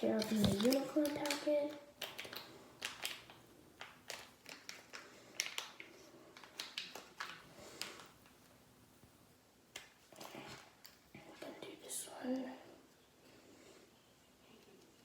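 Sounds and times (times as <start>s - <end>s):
packet crinkling and tearing: 0.0s - 8.2s.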